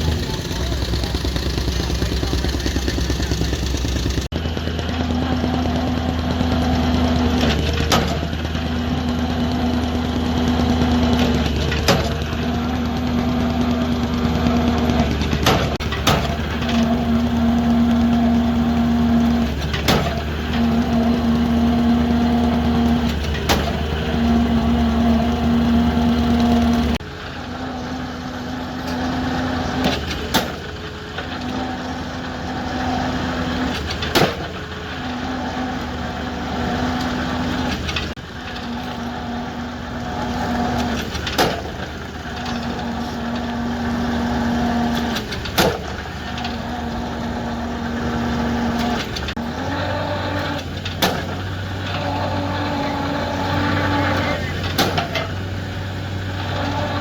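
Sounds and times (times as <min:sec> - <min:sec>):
diesel engine running: 0:00.0 - 0:57.0
sharp metal knocks: 0:15.4 - 0:20.3.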